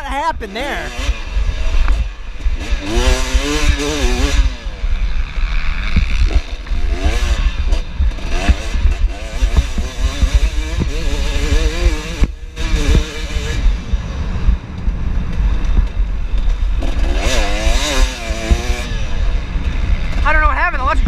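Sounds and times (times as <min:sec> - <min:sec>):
wind rumble on microphone: 0:12.9 - 0:16.8.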